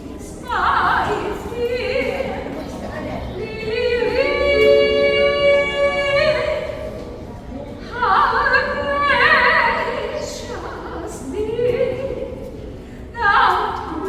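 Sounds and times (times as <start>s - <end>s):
high solo voice singing: 3.3s - 7.1s.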